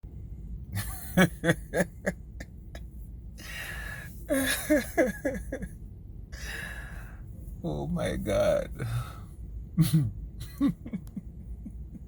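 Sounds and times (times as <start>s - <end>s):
person laughing: 0.8s - 2.4s, 4.3s - 5.7s, 9.8s - 12.0s.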